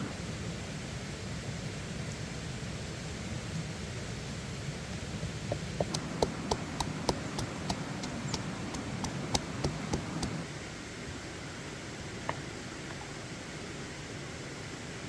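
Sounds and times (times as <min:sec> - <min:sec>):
sharp clicks and taps: 0:05.5 - 0:10.4
steady rushing noise: 0:05.8 - 0:10.4.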